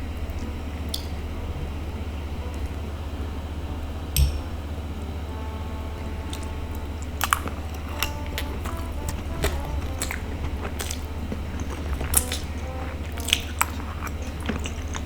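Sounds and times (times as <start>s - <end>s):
close eating sounds: 0.0s - 15.0s
steady low hum: 0.0s - 15.0s
mouth clicks and smacks: 6.3s - 15.0s.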